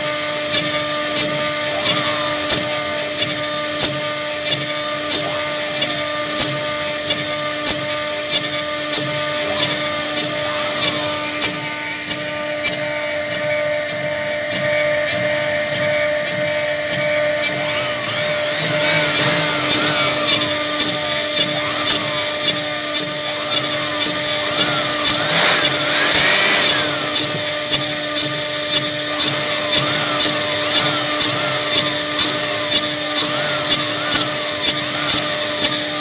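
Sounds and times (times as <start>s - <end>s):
router spindle hum: 9.2s - 28.1s
stepper motors whining: 10.6s - 28.2s
rushing noise: 25.0s - 27.8s.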